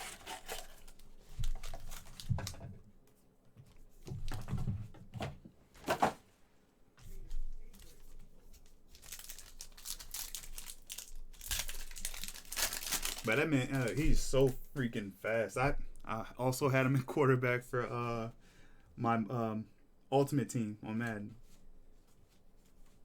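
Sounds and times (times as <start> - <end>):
wrappers tearing and crinkling: 0.0 - 2.6, 8.6 - 14.5.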